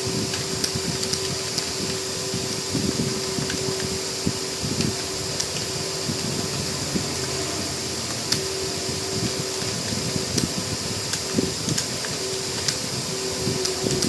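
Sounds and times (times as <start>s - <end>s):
whirring hum: 0.0s - 14.0s
sharp clicks: 11.1s - 12.8s.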